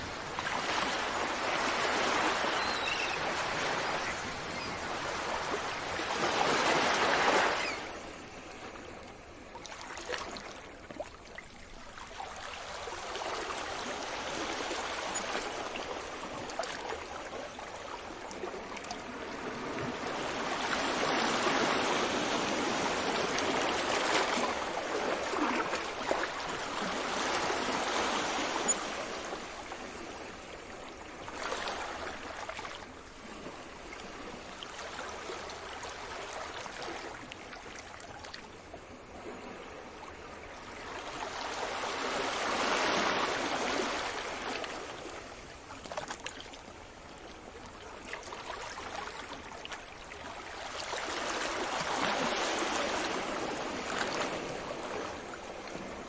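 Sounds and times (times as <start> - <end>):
sea waves breaking: 0.0 - 8.7, 18.4 - 37.3, 40.7 - 46.4, 50.1 - 56.0.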